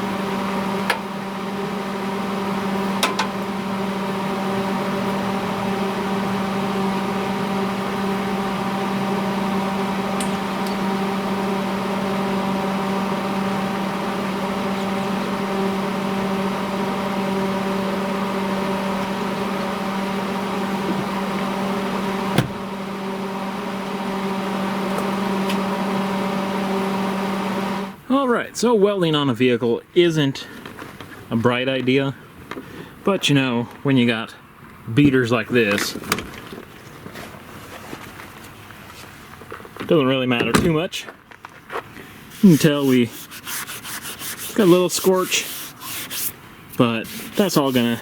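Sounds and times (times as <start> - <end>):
welding machine humming: 0.0 - 28.0, 42.3 - 48.0.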